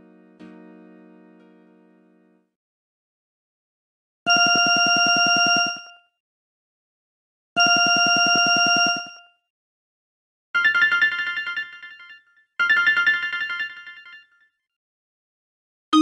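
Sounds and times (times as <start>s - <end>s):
pulsing phone ring tone: 10.6s - 14.4s
ringtone melody of quick notes: 10.6s - 14.4s.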